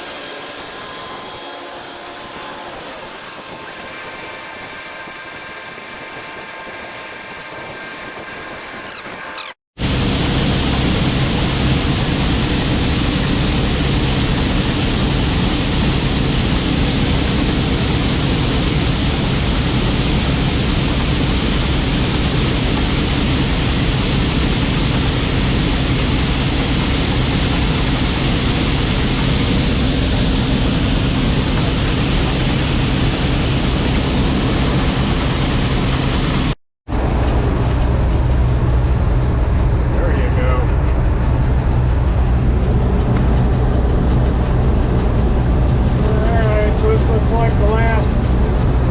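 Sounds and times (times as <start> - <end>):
low hum: 9.0 - 48.9
combine harvester droning: 9.8 - 48.9.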